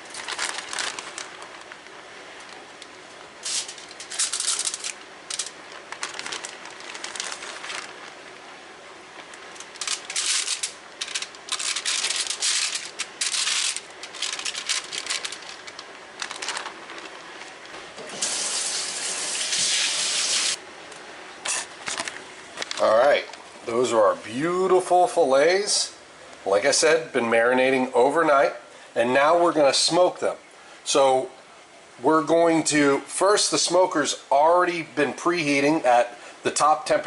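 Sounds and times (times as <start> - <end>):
aluminum foil crinkling: 0.0 - 2.6, 3.4 - 8.4, 9.2 - 17.7.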